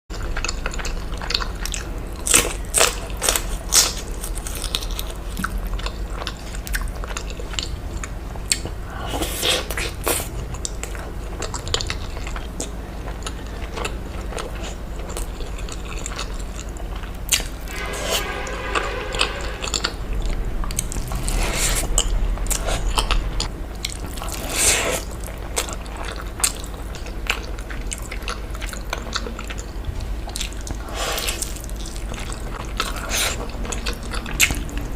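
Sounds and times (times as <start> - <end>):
person chewing crunchy food: 0.1 - 17.7, 20.8 - 34.9.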